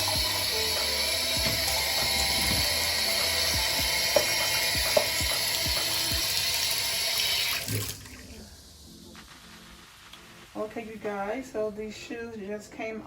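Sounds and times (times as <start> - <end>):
tap water pouring into tub: 0.0 - 8.5.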